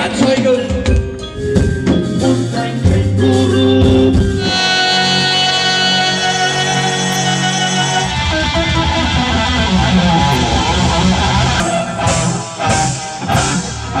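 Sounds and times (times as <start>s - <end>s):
rock band playing live: 0.0s - 14.0s.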